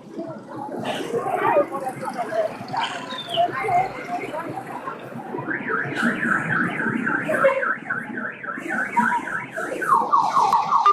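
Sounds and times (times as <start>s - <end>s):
low street noise: 0.0s - 10.9s
car alarm warbling: 5.5s - 10.9s.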